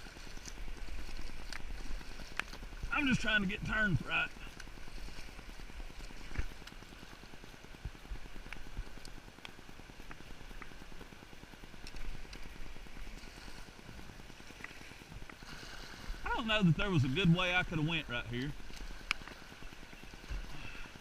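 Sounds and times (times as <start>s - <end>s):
river water rushing: 0.0s - 7.6s, 12.1s - 21.0s.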